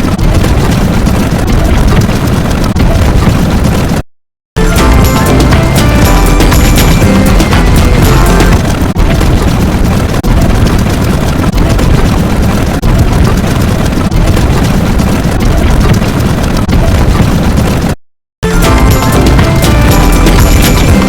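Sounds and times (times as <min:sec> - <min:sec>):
distorted noise: 0:04.6 - 0:21.0.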